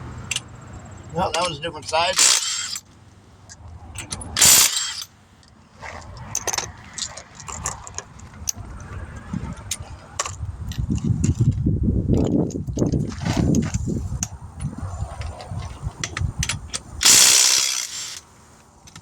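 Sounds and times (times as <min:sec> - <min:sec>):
metal parts clinking: 0:01.2 - 0:02.9, 0:04.0 - 0:05.1, 0:16.1 - 0:18.3
ratchet wrench clicking: 0:02.1 - 0:02.9, 0:04.0 - 0:05.1, 0:16.4 - 0:18.2.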